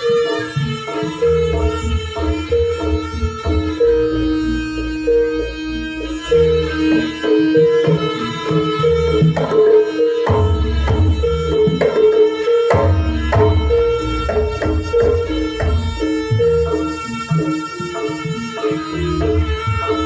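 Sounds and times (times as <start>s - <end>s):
sustained melody notes: 0.0s - 20.0s
hand drums tapping: 7.5s - 20.0s
heavy bass beat: 12.8s - 16.8s.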